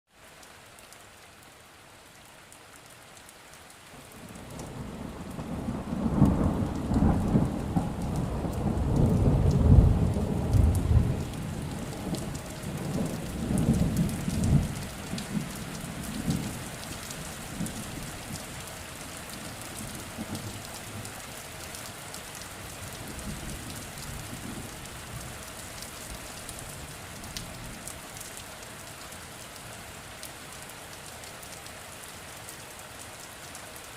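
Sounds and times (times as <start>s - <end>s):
steady rain: 0.1s - 33.9s
raindrop ticks: 2.6s - 31.7s
rolling thunder: 4.6s - 16.9s.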